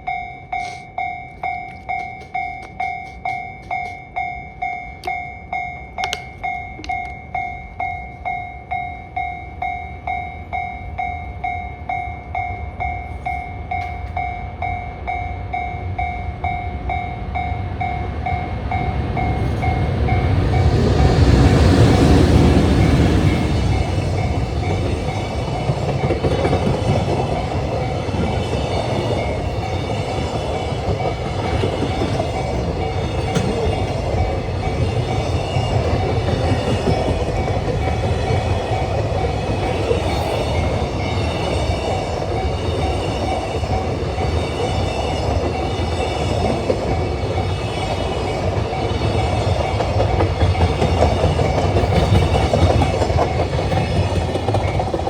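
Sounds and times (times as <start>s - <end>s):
freight train rumbling past: 0.0s - 55.0s
wheels clacking over rail joints: 17.8s - 55.0s.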